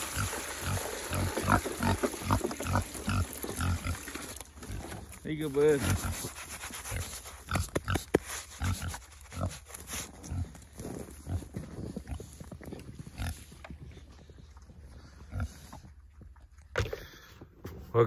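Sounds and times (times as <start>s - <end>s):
pigs grunting: 0.1s - 12.4s, 15.0s - 15.9s.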